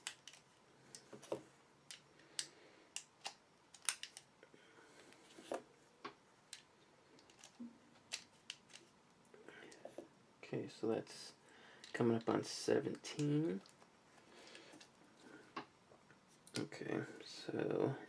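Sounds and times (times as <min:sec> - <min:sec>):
cartridges clicking into magazine: 0:01.9 - 0:04.2.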